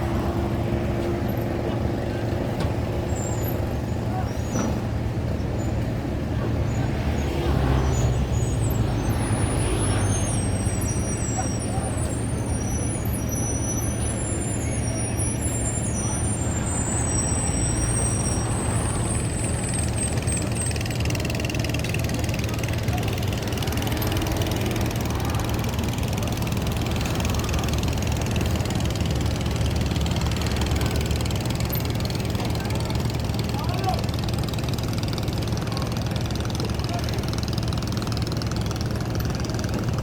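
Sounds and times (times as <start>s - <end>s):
large engine humming: 0.0s - 40.0s
high wavering squeals: 8.9s - 20.8s.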